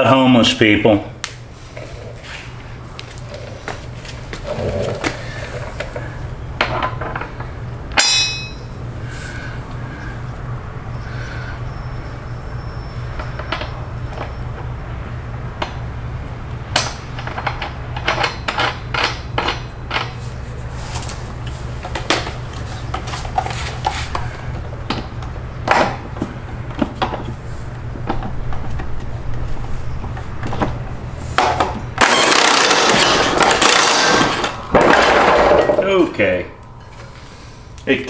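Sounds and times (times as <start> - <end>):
steady low hum: 0.0 - 38.0
hand tools clinking on metal: 8.0 - 8.7.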